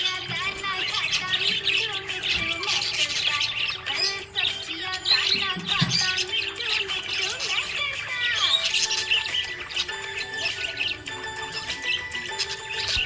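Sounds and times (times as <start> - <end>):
budgerigars chirping and warbling: 0.0 - 13.0.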